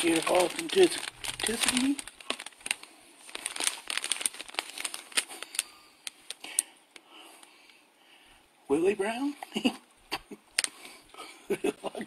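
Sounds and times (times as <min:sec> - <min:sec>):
packaging crinkling: 0:00.0 - 0:07.0, 0:10.5 - 0:11.0.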